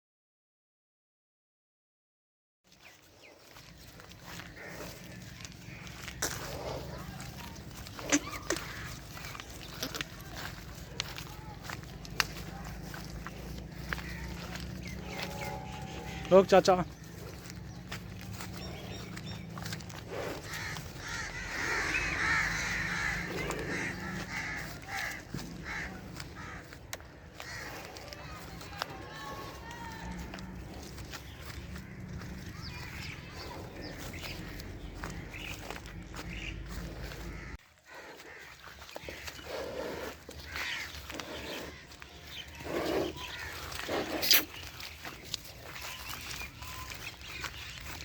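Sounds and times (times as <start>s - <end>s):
animal calls: 3.2s - 48.0s
crows cawing: 3.9s - 48.0s.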